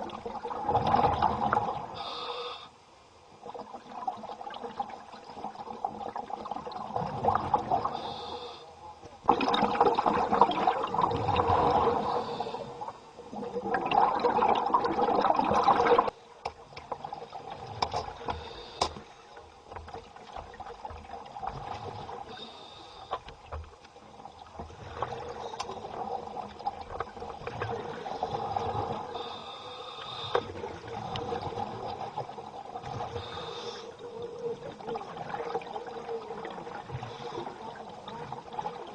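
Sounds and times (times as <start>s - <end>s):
water gurgling: 0.0s - 2.3s, 3.3s - 8.5s, 9.1s - 38.9s
diver exhaling bubbles: 9.3s - 16.1s.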